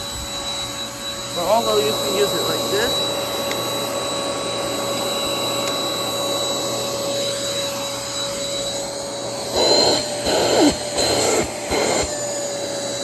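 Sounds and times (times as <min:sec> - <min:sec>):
vacuum cleaner motor whining: 0:00.0 - 0:13.0.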